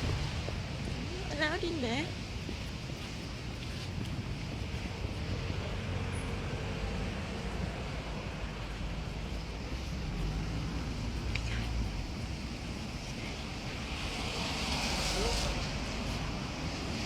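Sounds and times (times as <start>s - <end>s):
distant engine rumble: 0.0s - 17.0s
hiss: 13.8s - 16.3s.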